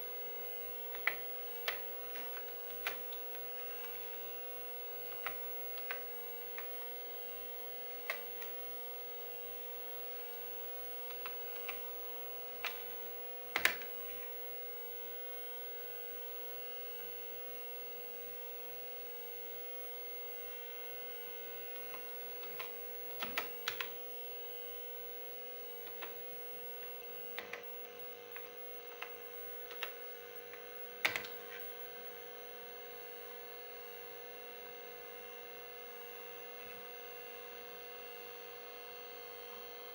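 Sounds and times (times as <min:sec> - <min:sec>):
computer hum: 0:00.0 - 0:39.9
hard drive clicks: 0:00.8 - 0:08.7, 0:10.9 - 0:14.4, 0:21.5 - 0:24.0, 0:25.6 - 0:31.7.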